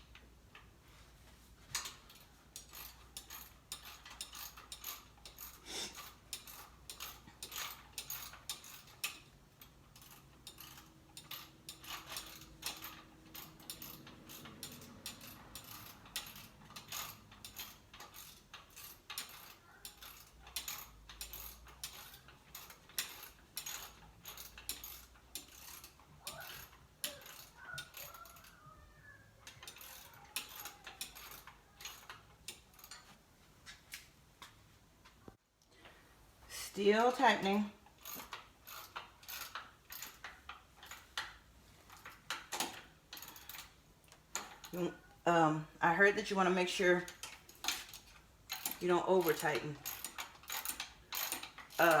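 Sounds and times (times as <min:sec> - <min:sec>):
socket ratchet clicking: 0:47.1 - 0:52.0.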